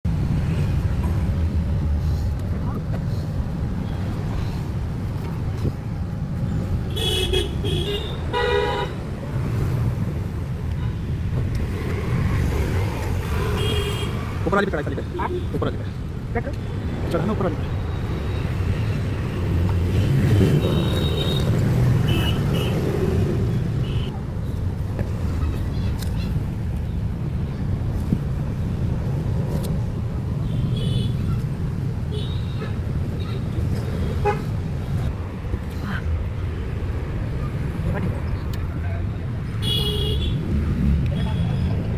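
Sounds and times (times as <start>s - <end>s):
traffic rumble: 0.0s - 41.9s
vehicle horns honking: 6.9s - 9.0s, 20.6s - 22.8s, 39.6s - 40.4s.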